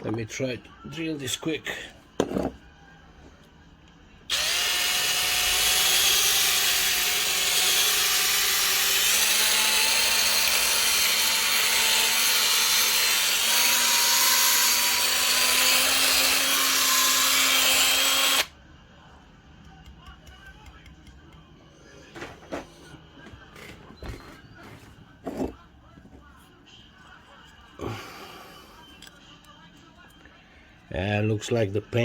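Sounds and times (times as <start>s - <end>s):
electric drill whining: 4.3s - 18.5s.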